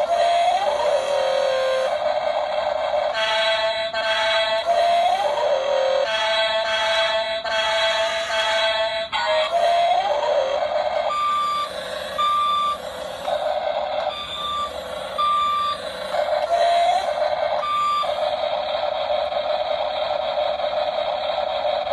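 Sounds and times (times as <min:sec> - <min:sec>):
toy motors whirring: 0:00.0 - 0:21.9
electronic warning beeps: 0:11.1 - 0:16.9, 0:17.5 - 0:18.4.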